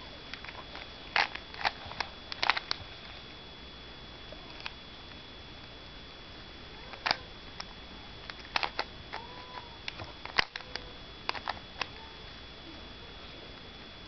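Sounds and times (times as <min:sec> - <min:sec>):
puzzle cube plastic clicks: 0:00.4 - 0:02.8, 0:06.9 - 0:12.0.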